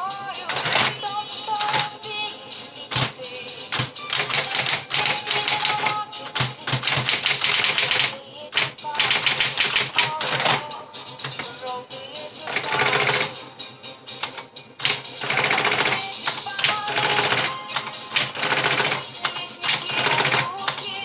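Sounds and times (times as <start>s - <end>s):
typewriter key strikes: 0.5s - 2.0s, 2.9s - 11.6s, 12.5s - 13.3s, 14.2s - 21.0s.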